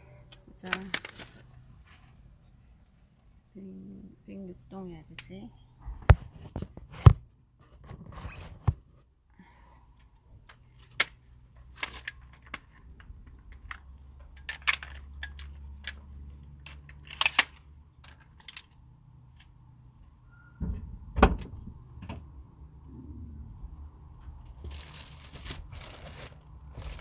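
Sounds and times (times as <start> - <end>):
low steady hum: 0.0 - 6.6, 18.0 - 27.0
clicks and knocks of handling: 10.5 - 19.5.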